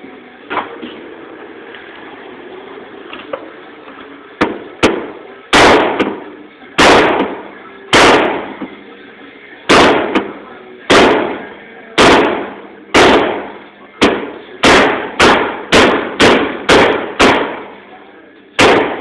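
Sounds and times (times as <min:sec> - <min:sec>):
hammer striking sheet metal: 0:04.4 - 0:08.7, 0:09.7 - 0:17.8, 0:18.6 - 0:19.0.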